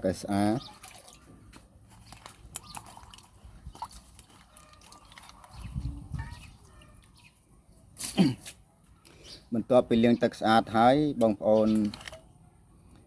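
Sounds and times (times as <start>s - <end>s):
water dripping and splashing: 0.5s - 6.8s.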